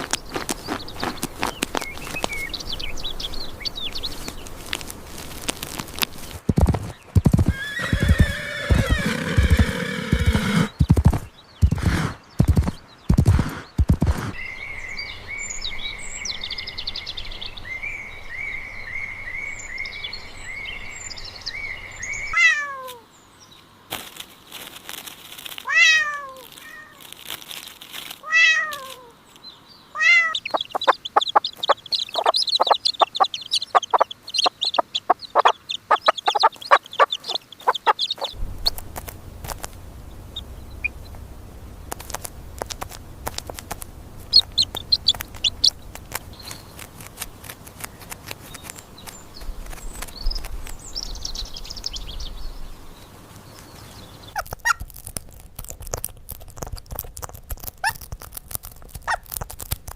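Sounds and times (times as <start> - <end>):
falling animal cries: 7.4 - 10.7, 22.3 - 23.0, 25.6 - 27.0, 28.2 - 29.2, 29.9 - 38.8
high animal trill: 7.4 - 11.0, 30.0 - 48.1
high chirps: 30.0 - 47.2.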